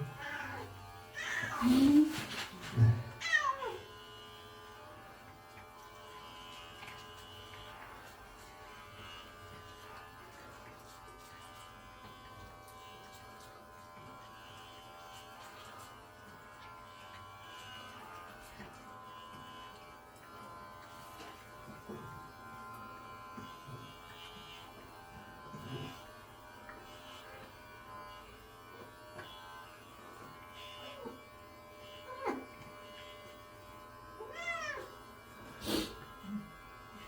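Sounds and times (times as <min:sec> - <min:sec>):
cat meowing: 0:00.0 - 0:01.6, 0:03.2 - 0:03.8, 0:34.2 - 0:34.9
electric clippers humming: 0:00.0 - 0:37.0.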